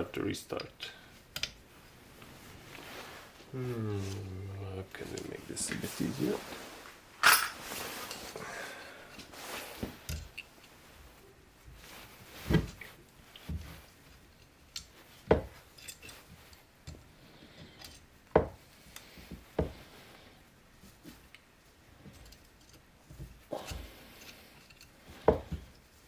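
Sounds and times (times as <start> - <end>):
metal tools clinking and knocking: 7.2 - 8.3.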